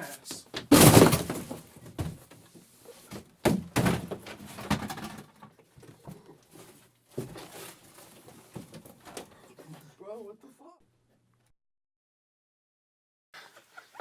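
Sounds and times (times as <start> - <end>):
dull thuds and knocks: 0.5 - 2.3, 3.1 - 5.2
faint scuffling: 5.7 - 10.0.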